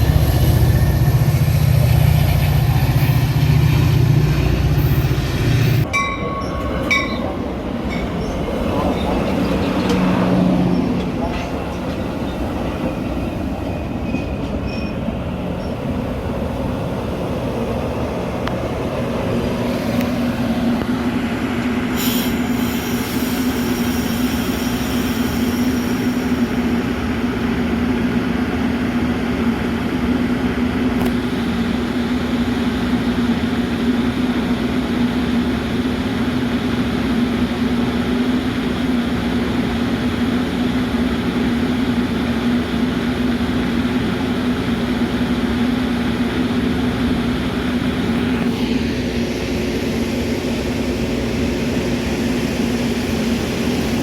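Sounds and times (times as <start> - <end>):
train rumbling: 0.0 - 54.0
hiss: 21.9 - 26.5.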